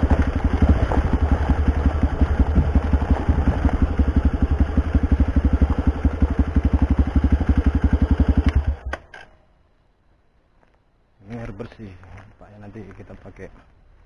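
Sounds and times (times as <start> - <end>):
small engine idling: 0.0 - 9.3.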